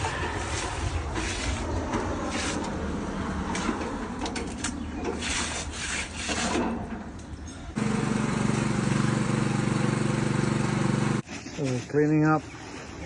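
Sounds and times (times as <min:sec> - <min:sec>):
hand tool scraping concrete: 0:05.1 - 0:06.7.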